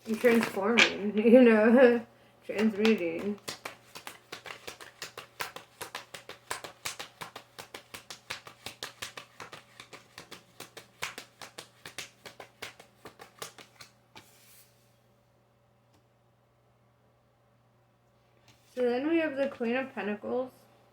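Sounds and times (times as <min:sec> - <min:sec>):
cards being shuffled: 0:00.0 - 0:01.3, 0:02.5 - 0:14.8.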